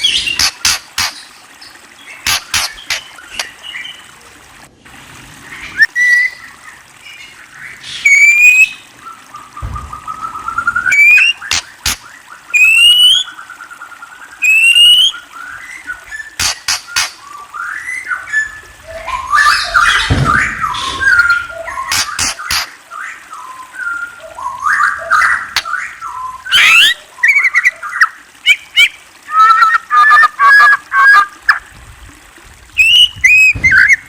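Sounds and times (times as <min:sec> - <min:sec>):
sharp clicks: 0:00.4 - 0:01.2, 0:02.3 - 0:03.5, 0:11.5 - 0:12.0, 0:16.4 - 0:17.2, 0:21.9 - 0:22.7
songbird whistling and warbling: 0:02.2 - 0:04.1, 0:05.5 - 0:31.6, 0:32.7 - 0:34.0.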